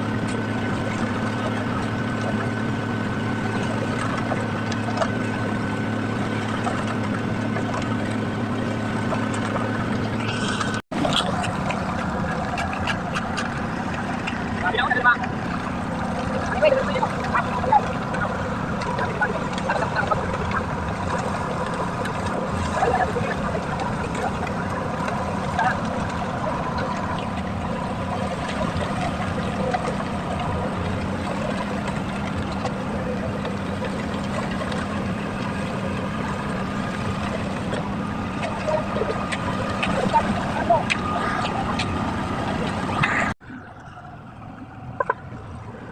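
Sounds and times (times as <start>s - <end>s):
heavy machinery engine humming: 0.0s - 45.9s.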